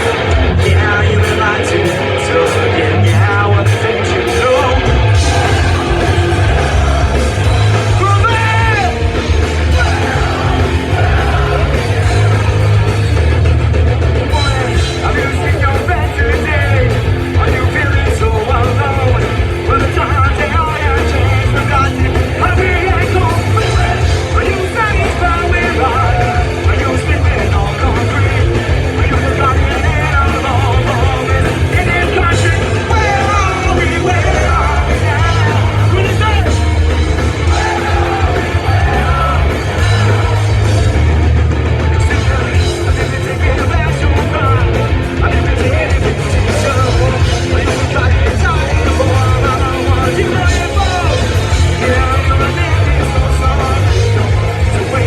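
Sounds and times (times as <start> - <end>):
punk band playing live: 0.0 - 55.0
shouted lead vocal: 0.0 - 55.0
person singing: 14.3 - 36.6, 37.4 - 40.9.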